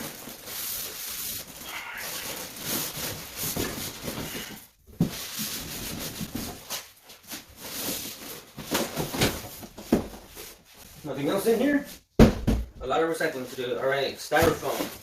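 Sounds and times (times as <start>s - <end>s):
packaging rubbing and scraping: 0.0s - 9.7s
knock: 12.2s - 12.8s.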